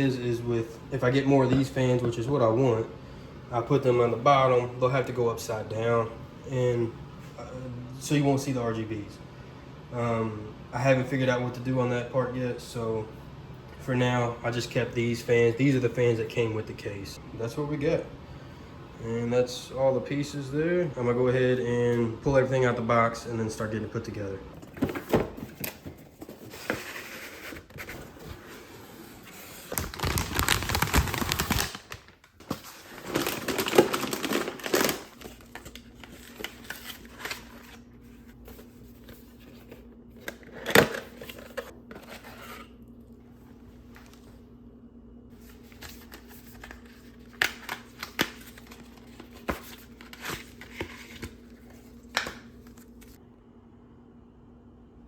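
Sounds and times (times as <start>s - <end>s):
faint steady hum: 0.0s - 55.0s
packaging crinkling and rustling: 29.4s - 42.4s, 45.4s - 53.2s.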